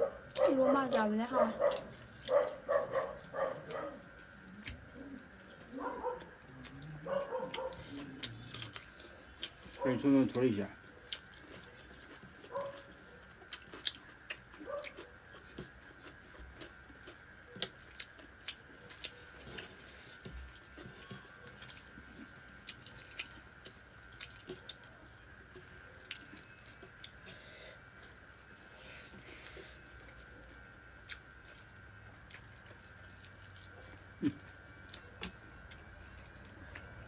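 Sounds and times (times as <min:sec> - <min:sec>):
person chewing with mouth smacks: 0:11.0 - 0:27.4, 0:28.0 - 0:37.0.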